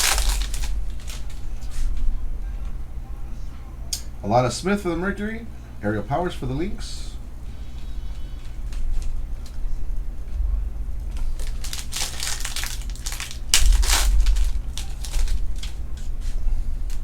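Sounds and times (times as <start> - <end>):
foil wrapper crinkling: 0.0 - 2.1, 11.1 - 17.0.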